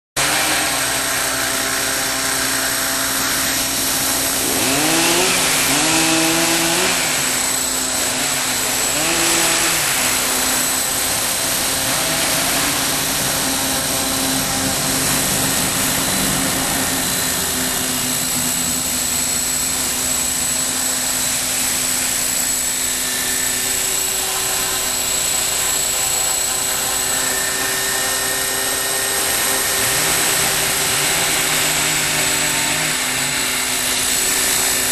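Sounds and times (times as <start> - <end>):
model helicopter rotor whine: 0.2 - 34.9.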